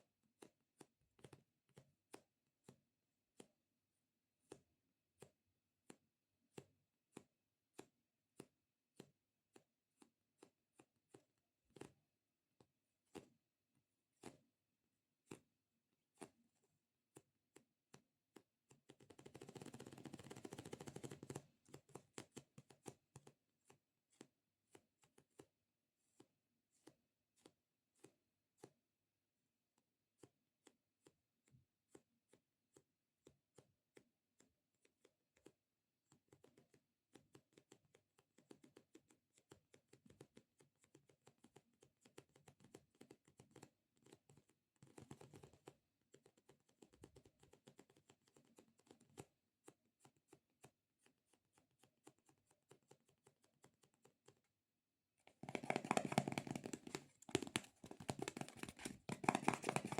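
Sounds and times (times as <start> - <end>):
fingers tapping squishy toy: 0.3 - 3.6, 17.1 - 25.5, 30.2 - 49.3, 55.2 - 59.9.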